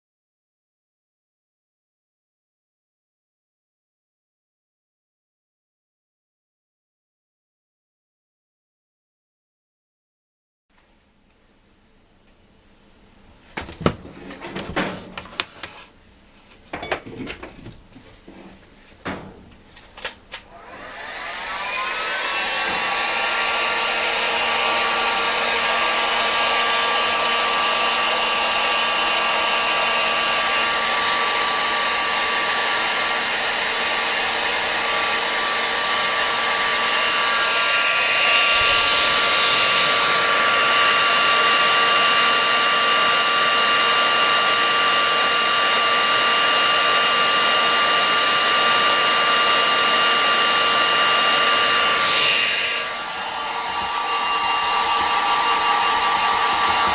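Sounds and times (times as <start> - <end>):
high fan whine: 10.8 - 56.9
hot air gun blowing: 20.5 - 56.9.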